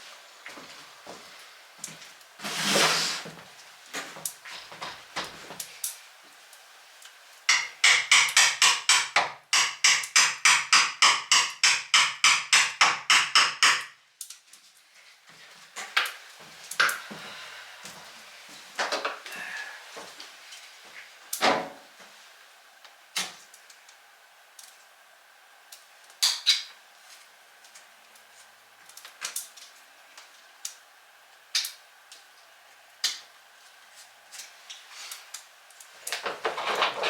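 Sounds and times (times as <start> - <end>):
hammer tapping: 7.5 - 13.9.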